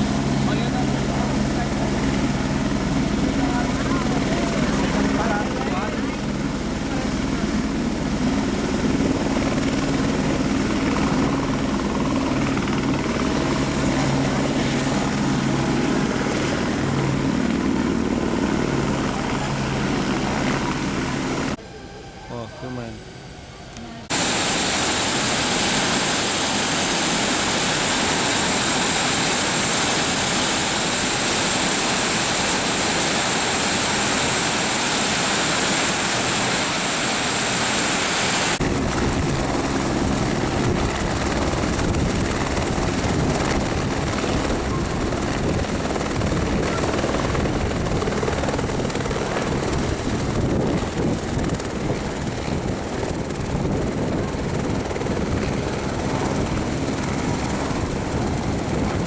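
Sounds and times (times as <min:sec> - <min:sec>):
helicopter engine rushing and whining: 0:00.0 - 0:59.0.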